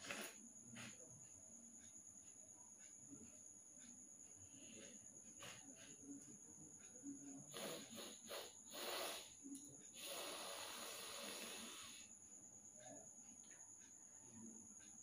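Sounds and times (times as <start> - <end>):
person blowing nose: 7.5 - 9.3, 10.0 - 11.9.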